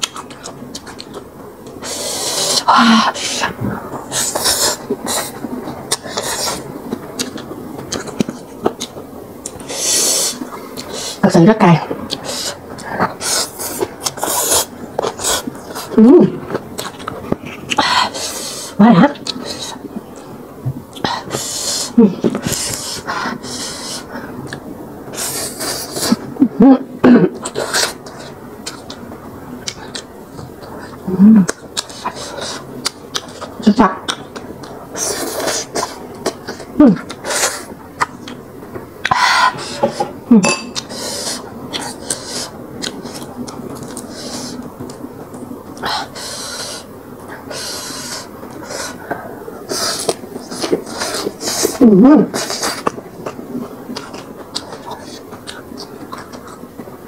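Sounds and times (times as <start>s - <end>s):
person chewing and smacking: 0.0s - 2.7s, 4.0s - 11.2s, 12.0s - 18.2s, 27.4s - 57.0s
sharp hissing breaths: 40.9s - 42.5s, 45.8s - 46.9s, 47.5s - 49.1s.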